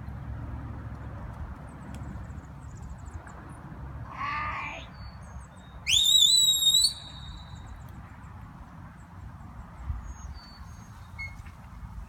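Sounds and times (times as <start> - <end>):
sharp rising whistle: 5.9 - 7.6.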